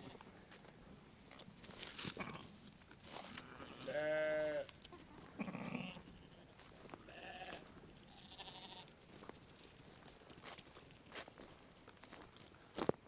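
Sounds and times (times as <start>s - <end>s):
sheep bleating: 3.3s - 8.9s.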